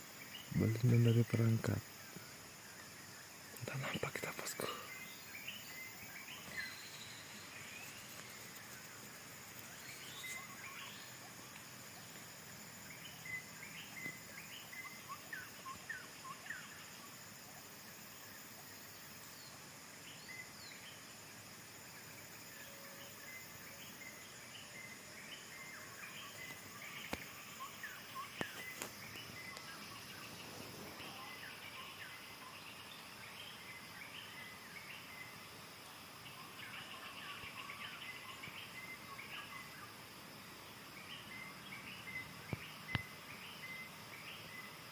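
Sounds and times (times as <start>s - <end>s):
high-pitched insect drone: 0.0s - 44.9s
birds chirping and whistling: 3.8s - 8.5s, 9.7s - 11.2s.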